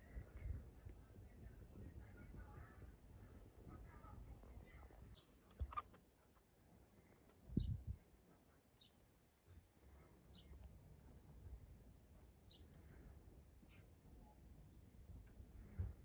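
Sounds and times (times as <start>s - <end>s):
faint high chirp: 8.5s - 9.2s.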